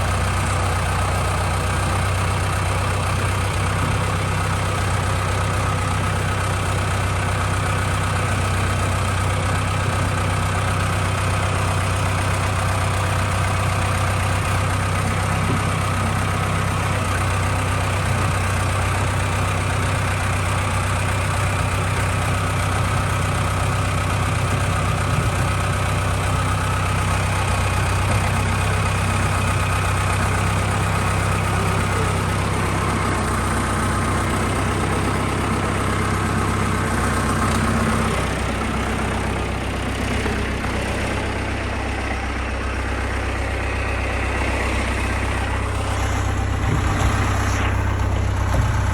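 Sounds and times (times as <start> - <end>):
machine drone with low hum: 45.0 - 48.9.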